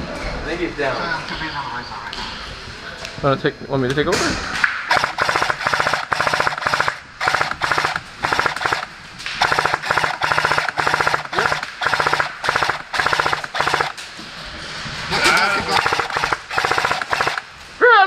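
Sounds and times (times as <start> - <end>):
airsoft machine gun bursts: 4.9 - 14.0, 15.6 - 17.5
motor and gearbox whir: 4.9 - 14.0, 15.6 - 17.4.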